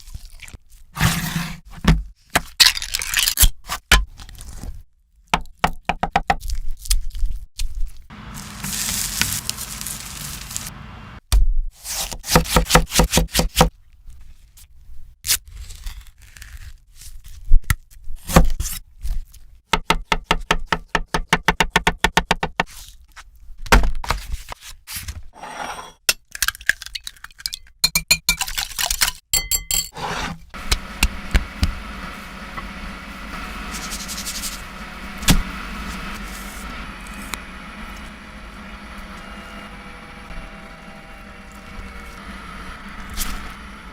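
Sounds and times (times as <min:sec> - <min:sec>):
steady hum: 0:30.6 - 0:43.9.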